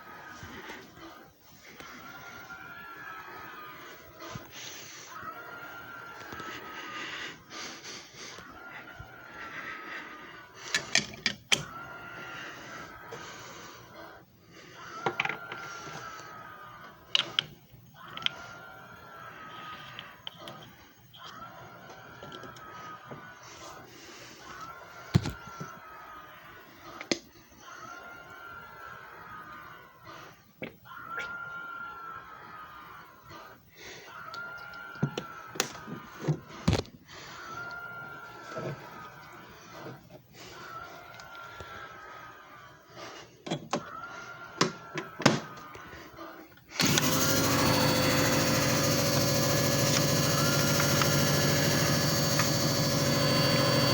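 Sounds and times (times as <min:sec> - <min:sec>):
machine motor whine: 0:46.8 - 0:53.9.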